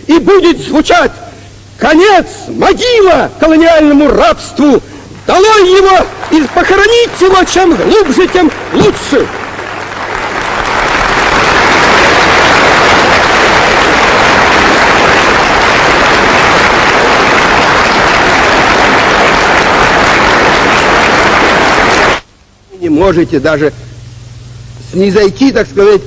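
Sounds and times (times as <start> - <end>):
audience applause: 5.4 - 22.3.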